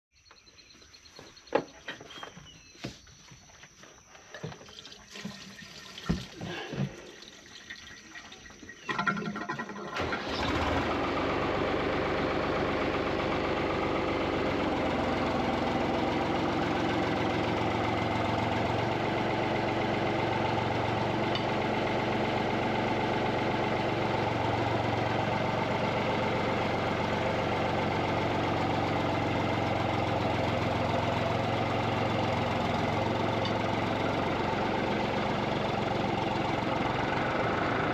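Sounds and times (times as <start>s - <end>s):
tractor diesel engine starting: 8.8s - 37.9s.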